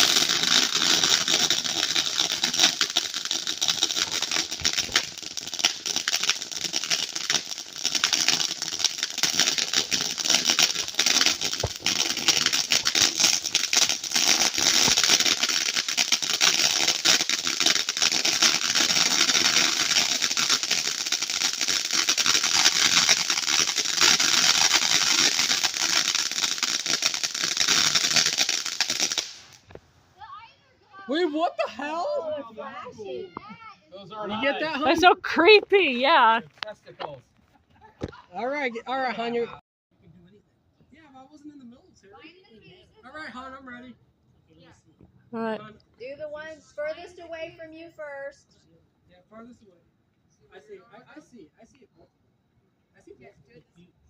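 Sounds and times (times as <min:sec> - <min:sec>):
firework fountain hissing and crackling: 0:00.0 - 0:33.2, 0:34.4 - 0:36.4.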